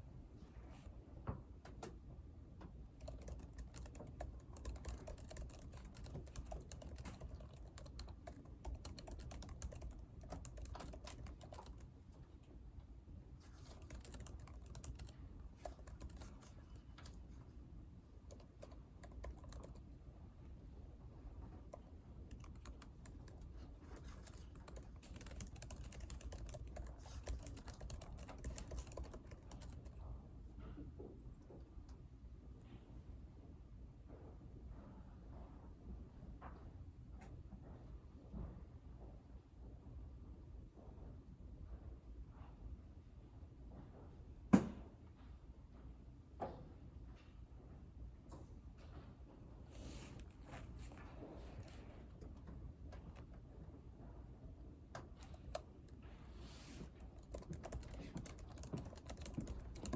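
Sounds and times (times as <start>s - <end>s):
low room hum: 0.0s - 59.9s
typing on a computer keyboard: 3.0s - 11.9s, 13.5s - 17.2s, 18.2s - 19.9s, 21.6s - 30.0s, 55.0s - 56.0s, 57.0s - 59.9s.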